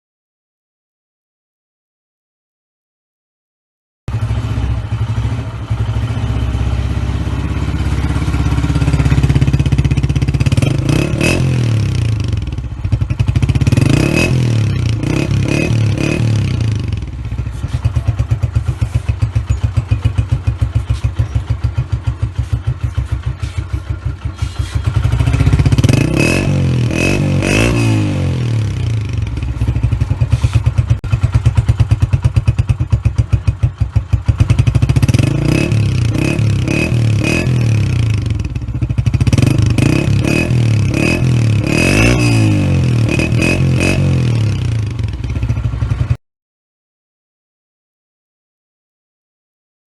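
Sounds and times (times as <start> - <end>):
motorcycle engine idling and revving: 4.1 - 46.2.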